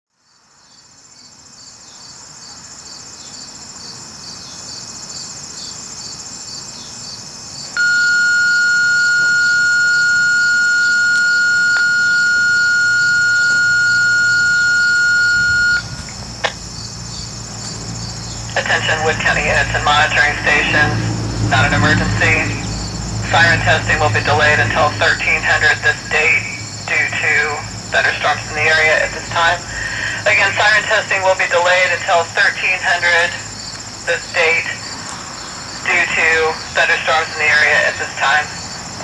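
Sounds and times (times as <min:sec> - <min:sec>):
insects chirping: 0:00.2 - 0:39.0
high steady alert tone: 0:07.8 - 0:16.1
radio click: 0:07.8 - 0:16.6, 0:18.5 - 0:20.9.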